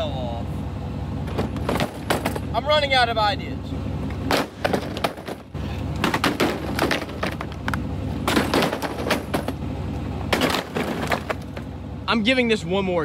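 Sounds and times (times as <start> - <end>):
pickup truck engine running: 0.0 - 13.0
cracking and crunching impacts: 4.2 - 9.6, 10.3 - 11.7.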